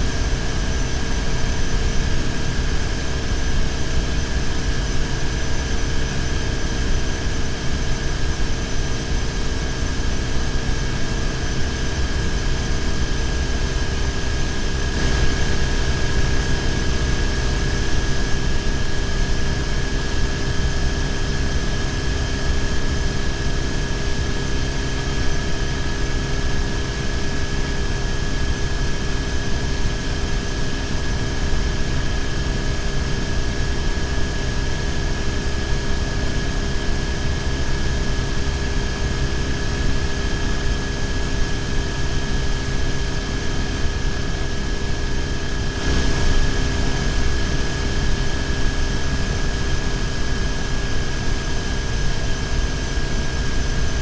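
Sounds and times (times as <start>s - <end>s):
steady high whine: 0.0s - 54.0s.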